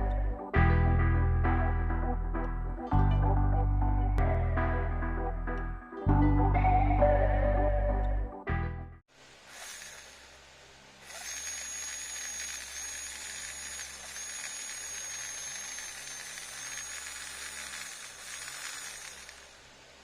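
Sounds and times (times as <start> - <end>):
small motor whining: 9.5 - 10.3, 11.0 - 19.8.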